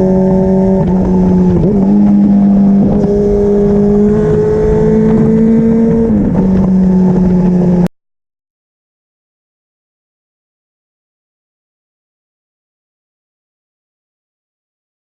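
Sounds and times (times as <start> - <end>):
motorcycle engine at high revs: 0.0 - 7.9.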